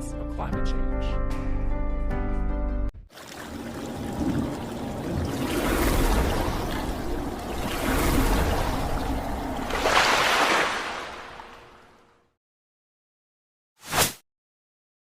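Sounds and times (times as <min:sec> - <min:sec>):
rushing water: 0:03.1 - 0:12.1.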